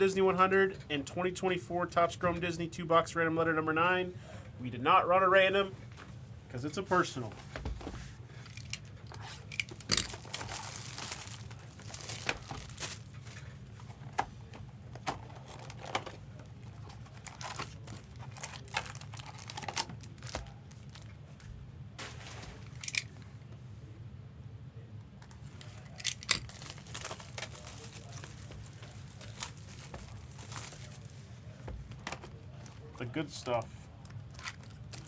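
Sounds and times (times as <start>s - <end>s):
wrapping crinkling and tearing: 8.6s - 13.6s, 15.2s - 21.2s, 25.2s - 31.5s, 34.0s - 35.0s.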